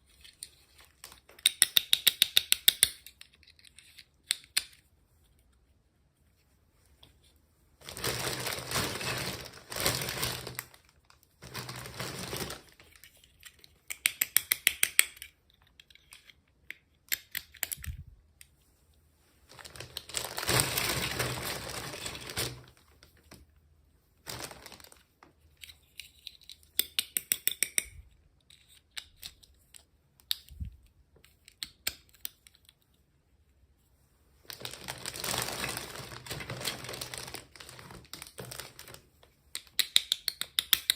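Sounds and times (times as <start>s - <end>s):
packaging rustling and crinkling: 7.8s - 13.1s, 19.5s - 23.3s, 24.2s - 25.1s, 34.5s - 39.1s.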